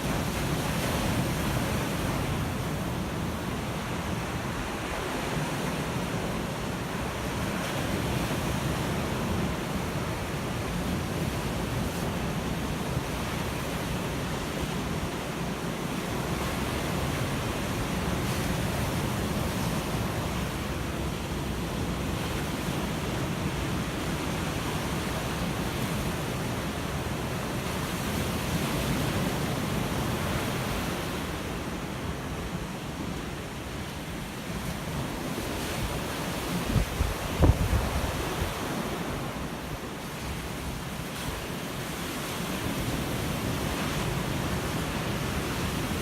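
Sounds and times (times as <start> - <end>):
ocean waves on shore: 0.0 - 46.0
wind buffeting microphone: 36.6 - 39.6.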